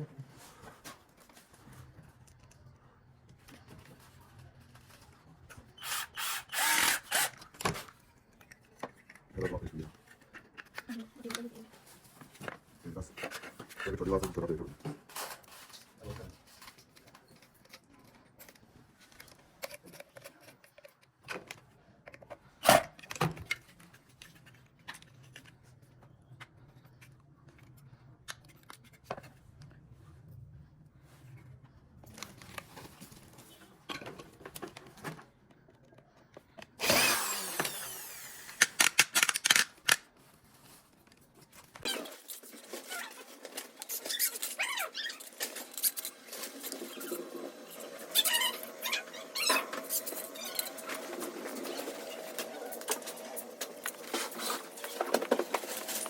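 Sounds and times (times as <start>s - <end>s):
power tool burst: 5.8s - 7.3s, 36.8s - 39.4s
parts and tools clicking: 36.6s - 40.1s.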